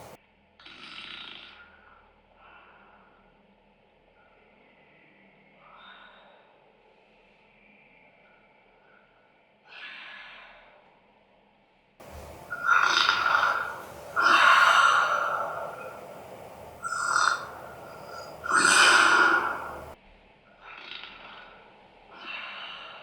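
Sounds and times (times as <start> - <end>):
man snoring: 12.0 - 20.0
quiet breathing: 12.0 - 20.0.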